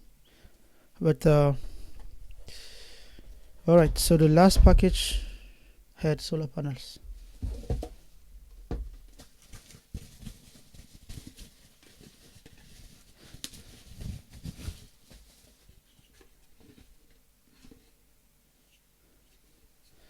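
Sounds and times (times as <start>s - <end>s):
items and packaging handled on table: 8.8s - 18.0s.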